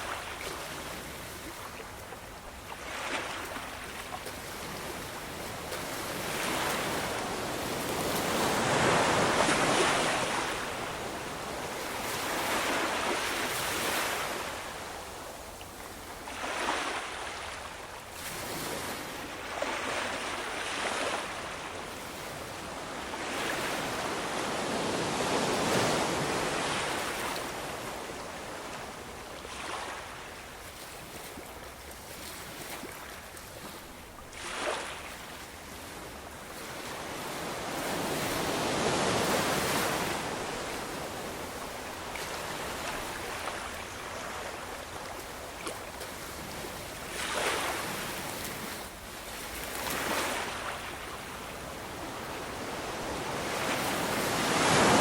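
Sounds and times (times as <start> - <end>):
ocean waves washing up: 36.6 - 46.1, 52.0 - 55.0.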